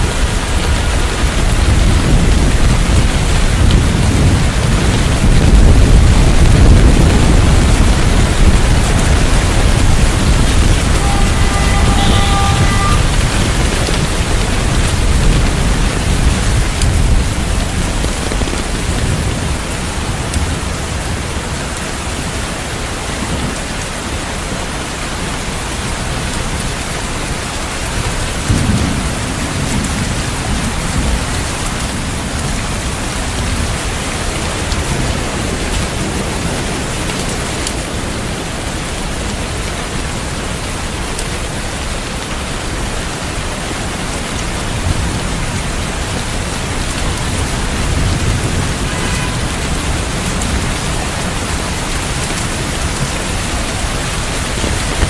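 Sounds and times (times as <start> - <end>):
thunder rumbling: 0.0 - 21.6, 26.1 - 37.5, 44.4 - 55.0
steady rain falling: 0.0 - 55.0.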